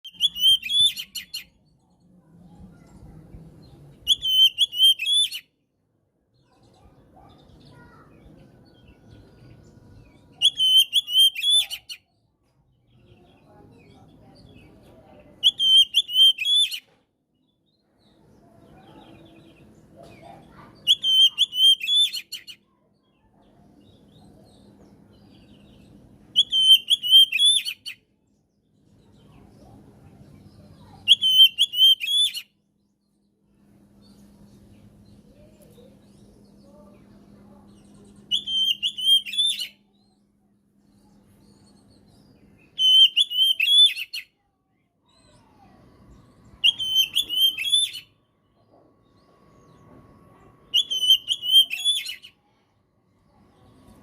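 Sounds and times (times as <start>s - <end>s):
bird whistled song: 0.0s - 1.6s, 3.6s - 5.5s, 8.7s - 12.2s, 15.3s - 17.0s, 18.0s - 22.8s, 23.8s - 28.1s, 30.4s - 33.2s, 33.9s - 44.4s, 45.0s - 52.5s.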